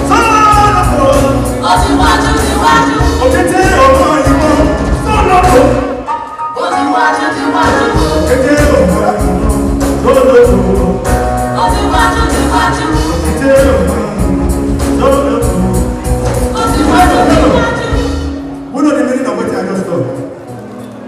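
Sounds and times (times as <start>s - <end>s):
live band music: 0.0s - 21.0s
person singing: 6.6s - 18.3s.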